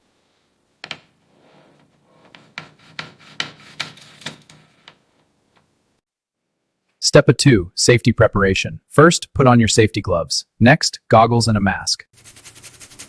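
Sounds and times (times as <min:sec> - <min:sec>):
scrubbing on rusty metal: 0:01.3 - 0:04.6.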